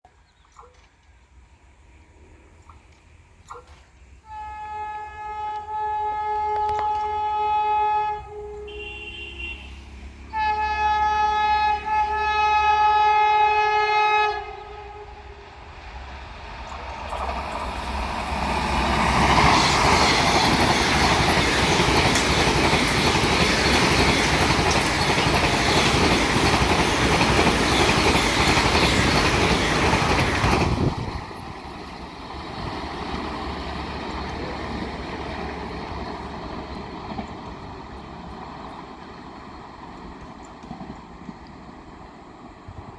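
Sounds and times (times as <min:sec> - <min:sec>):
train passing at high speed: 0:00.6 - 0:42.9
train horn blasts: 0:04.2 - 0:15.6.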